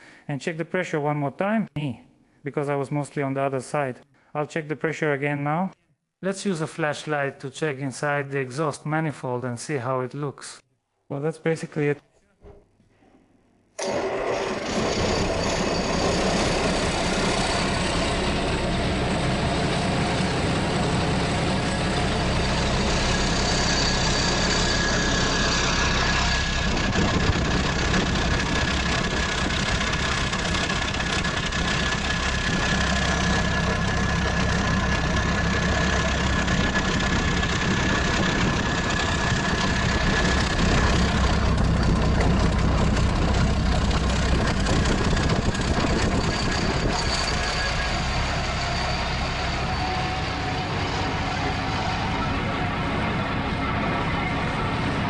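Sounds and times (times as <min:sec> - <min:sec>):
diesel engine idling: 0:14.6 - 0:55.0.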